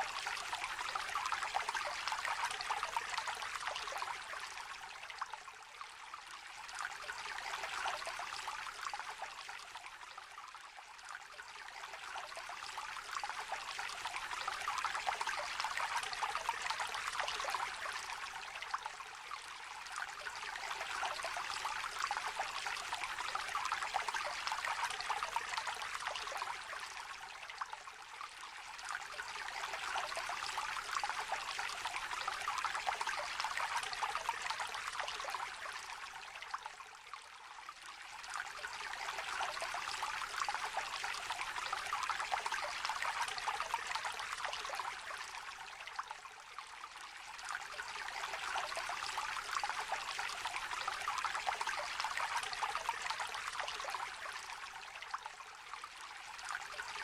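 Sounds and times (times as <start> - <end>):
stream babbling over stones: 37.8 - 46.3, 46.9 - 57.0.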